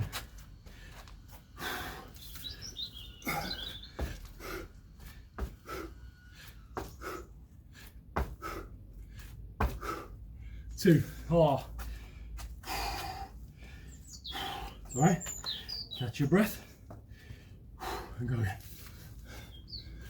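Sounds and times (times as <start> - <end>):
man breathing hard: 0.0 - 14.9, 16.5 - 20.0
landing thuds: 8.1 - 8.6.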